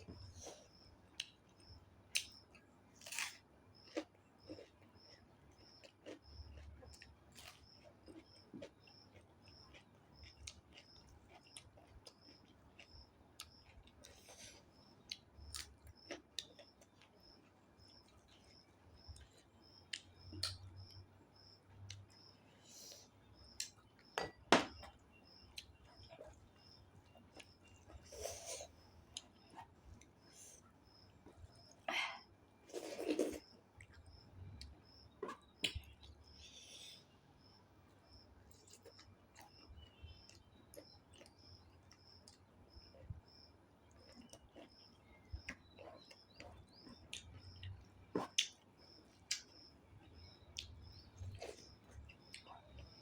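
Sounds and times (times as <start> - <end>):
faint high chirp: 38.7 - 43.2.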